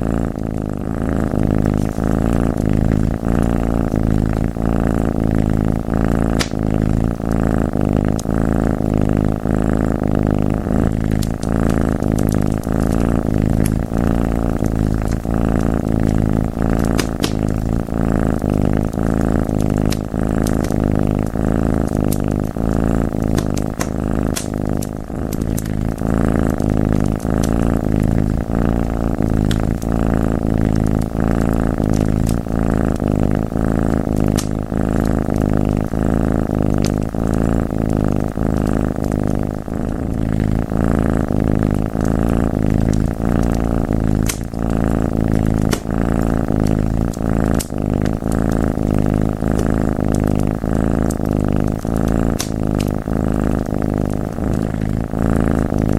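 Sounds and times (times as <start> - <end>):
cat purring: 0.0 - 55.9
fireplace crackling: 1.3 - 21.4, 22.0 - 36.0, 39.5 - 49.4.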